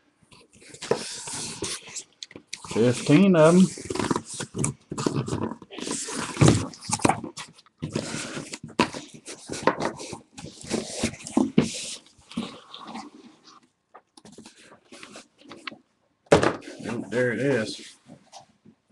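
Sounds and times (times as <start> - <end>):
packaging rustling and crinkling: 0.6 - 13.6.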